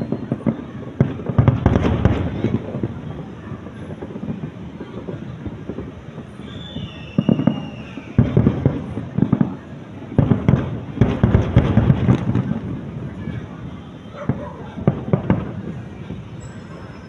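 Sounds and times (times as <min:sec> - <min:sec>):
falling firework whistle: 0:00.0 - 0:09.2, 0:13.1 - 0:17.0
fireworks bangs and crackles: 0:00.0 - 0:17.0.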